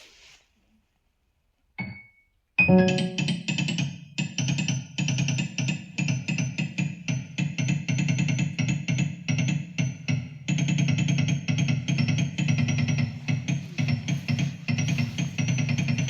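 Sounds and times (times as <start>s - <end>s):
short synthesizer notes: 2.7s - 3.3s.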